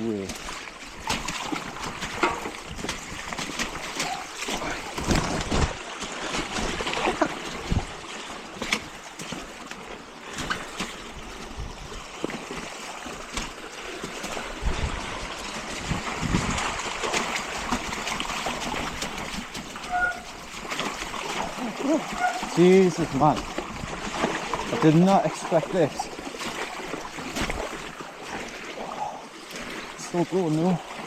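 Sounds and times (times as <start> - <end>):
tyres splashing through water: 0.0 - 31.0
bike knocks and rattles: 0.2 - 7.9.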